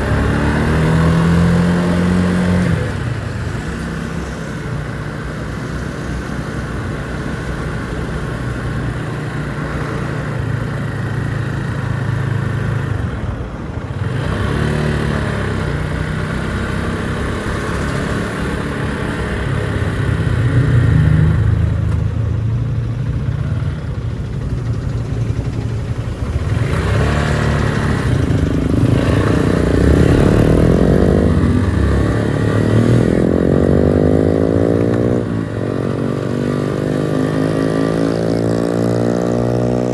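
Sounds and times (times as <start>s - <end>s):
motorcycle engine speeding up: 0.0s - 39.9s.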